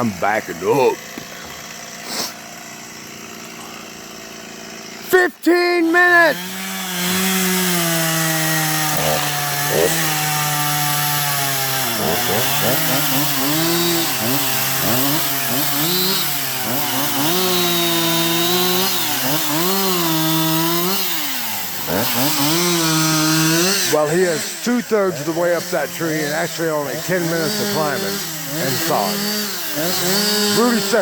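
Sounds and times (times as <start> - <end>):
chainsaw cutting wood: 0.0 - 31.0.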